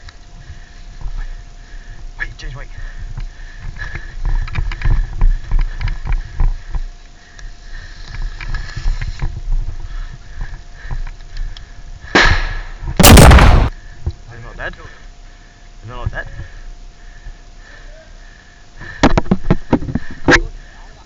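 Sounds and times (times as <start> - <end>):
sudden loud burst of noise: 12.2 - 13.8.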